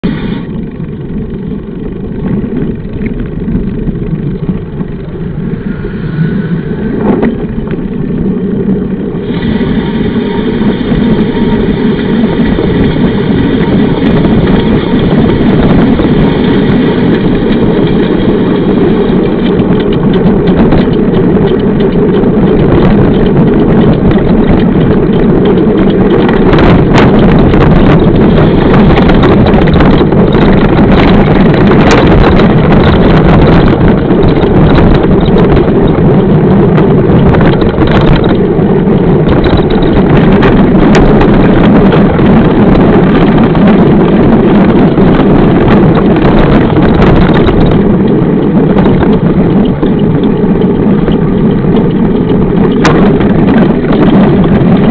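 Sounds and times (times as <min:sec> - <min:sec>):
wind buffeting microphone: 0:00.0 - 0:54.9
bike knocks and rattles: 0:11.4 - 0:54.9.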